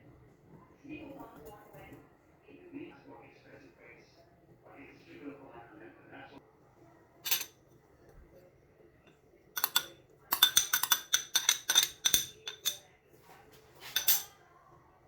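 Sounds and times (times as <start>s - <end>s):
kitchen utensils clinking and rattling: 7.2s - 7.6s, 9.6s - 12.9s, 13.6s - 14.4s.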